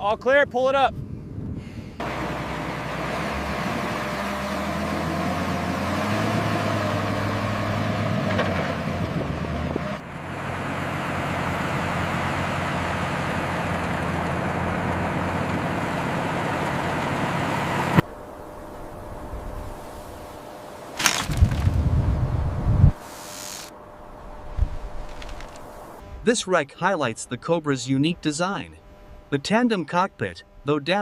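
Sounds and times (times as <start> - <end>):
heavy machinery engine running: 2.0 - 22.2.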